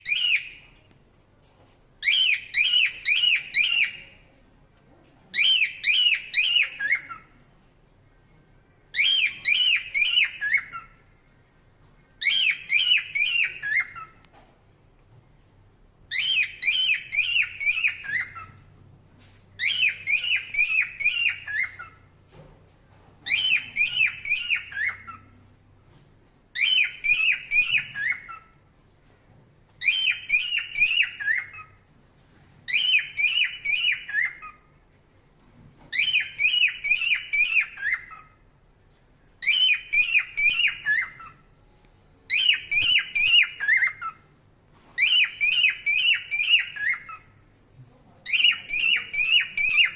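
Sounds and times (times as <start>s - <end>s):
parrot chirping: 0.0s - 0.9s, 2.0s - 4.3s, 5.3s - 7.4s, 8.9s - 11.1s, 12.1s - 14.2s, 16.1s - 18.7s, 19.6s - 22.1s, 23.2s - 25.4s, 26.5s - 28.7s, 29.8s - 31.9s, 32.7s - 34.8s, 35.9s - 38.5s, 39.4s - 41.6s, 42.3s - 47.4s, 48.2s - 49.9s.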